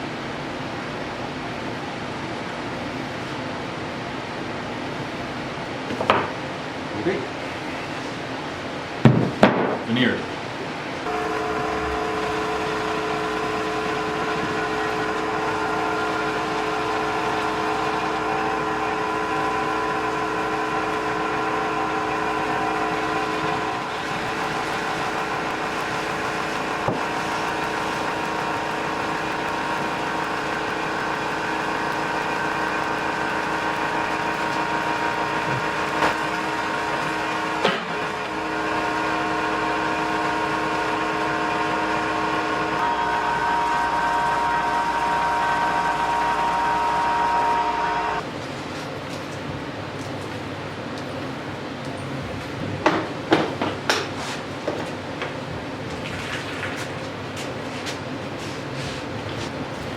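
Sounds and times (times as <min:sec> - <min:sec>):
machine humming: 0:10.4 - 0:48.4.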